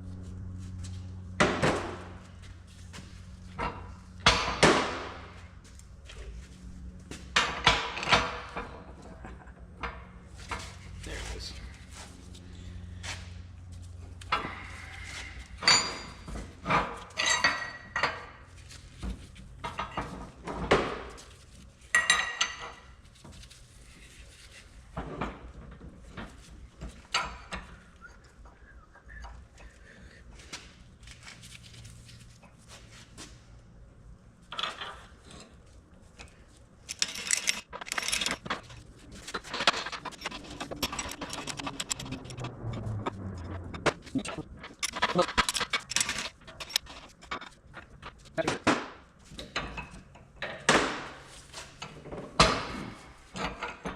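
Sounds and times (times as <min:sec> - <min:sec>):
steel parts and tools clinking: 0:15.6 - 0:18.3, 0:36.8 - 0:48.4.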